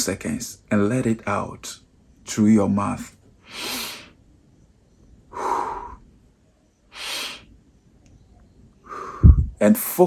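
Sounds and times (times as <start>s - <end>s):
man breathing deeply: 3.4s - 4.2s, 5.3s - 6.2s, 6.9s - 7.6s, 8.8s - 9.6s.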